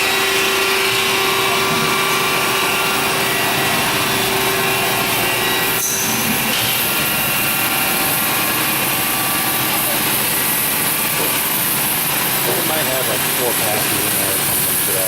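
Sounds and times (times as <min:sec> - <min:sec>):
grinder machine running: 0:00.0 - 0:15.0.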